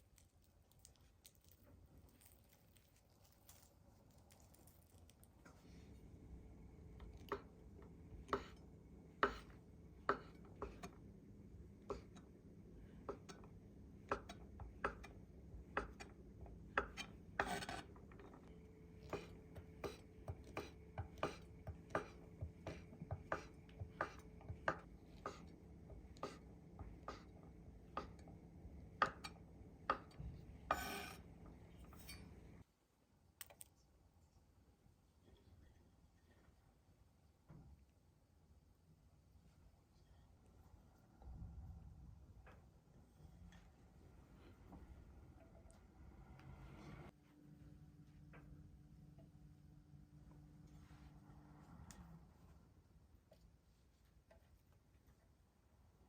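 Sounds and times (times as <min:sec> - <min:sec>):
knife cutting food: 0:16.8 - 0:18.4, 0:19.0 - 0:25.5, 0:30.7 - 0:31.3.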